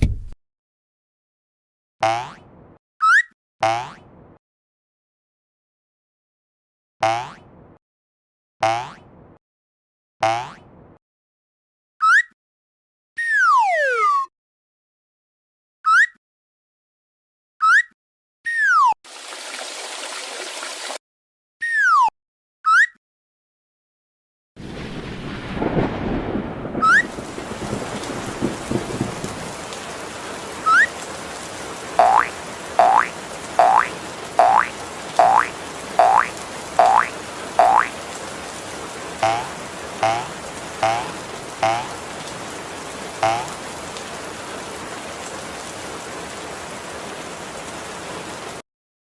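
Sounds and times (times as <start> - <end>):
rolling thunder rumbles: 24.6 - 30.2
rain hissing: 26.8 - 48.6.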